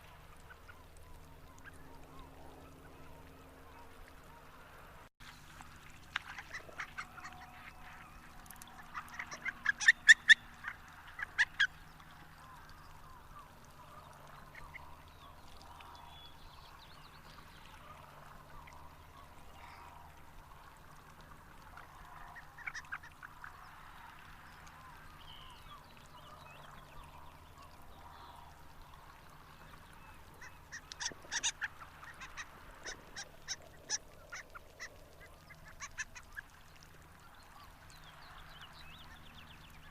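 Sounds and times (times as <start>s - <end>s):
ducks calling in high notes: 6.3s - 11.8s, 30.4s - 36.5s.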